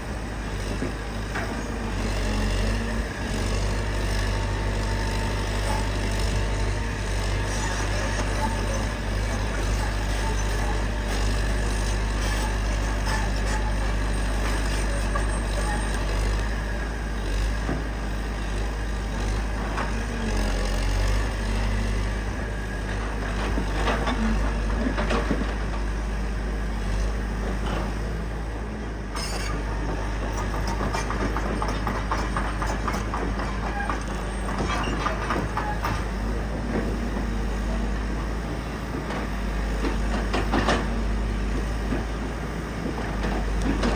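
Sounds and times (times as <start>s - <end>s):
excavator diesel engine running: 0.0s - 43.9s
clanks and rattles: 29.2s - 37.3s, 39.0s - 40.9s, 42.8s - 43.9s.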